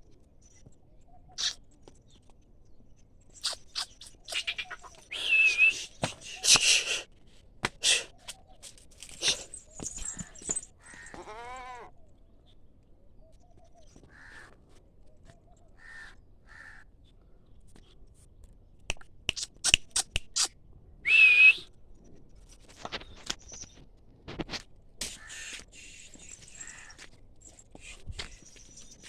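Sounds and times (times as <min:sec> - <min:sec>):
high whistle-like call: 0:05.1 - 0:07.0, 0:21.1 - 0:21.7
goat bleating: 0:11.0 - 0:11.9.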